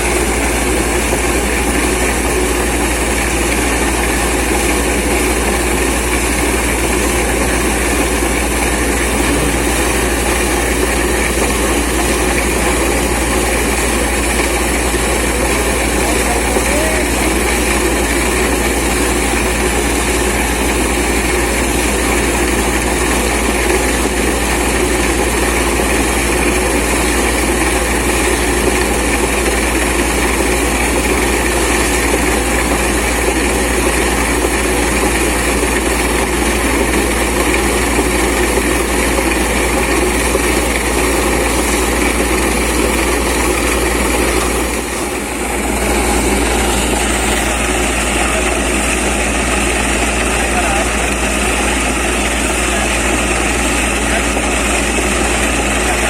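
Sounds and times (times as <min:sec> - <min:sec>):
air compressor running: 0:00.0 - 0:56.0
drilling rig running: 0:00.0 - 0:56.0.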